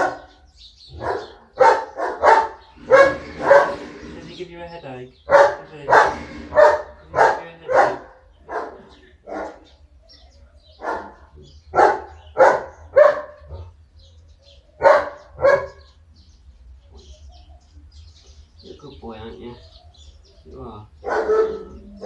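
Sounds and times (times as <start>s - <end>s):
dog barking: 0.0s - 4.1s, 5.3s - 13.7s, 14.8s - 15.9s, 21.0s - 22.0s.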